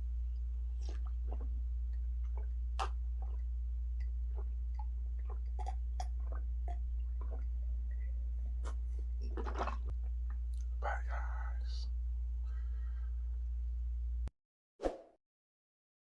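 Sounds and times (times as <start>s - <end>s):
low hum: 0.0s - 14.3s
mouth smacking and chewing: 0.8s - 7.5s, 8.6s - 10.7s.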